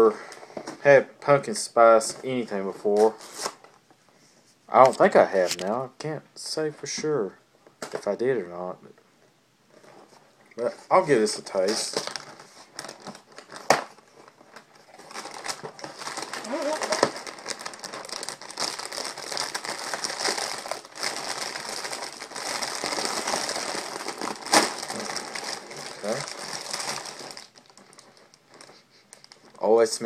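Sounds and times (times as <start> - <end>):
plastic bag and cardboard crinkling: 9.7 - 30.0.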